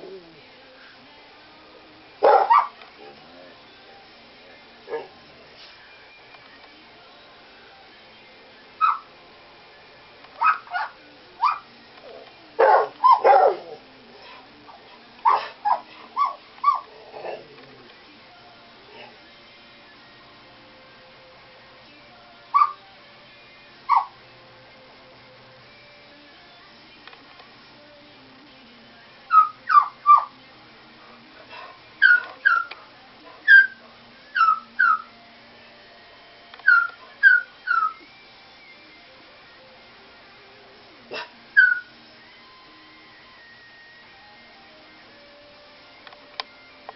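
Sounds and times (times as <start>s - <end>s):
bird imitating dog barks: 2.2s - 2.7s, 8.8s - 9.1s, 10.4s - 11.6s, 12.6s - 13.6s, 22.6s - 22.8s, 23.9s - 24.2s, 29.3s - 30.3s, 32.0s - 32.7s, 33.5s - 33.8s, 34.4s - 35.1s, 36.6s - 38.0s, 41.1s - 41.9s
bird mimicking dog yips: 23.9s - 24.1s, 32.0s - 32.7s, 34.4s - 35.1s, 36.7s - 38.0s, 41.6s - 41.9s.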